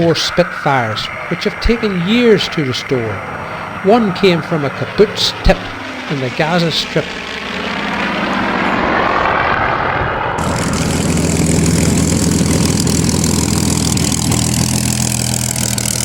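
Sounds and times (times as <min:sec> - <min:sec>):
aircraft engines droning: 0:00.0 - 0:16.0.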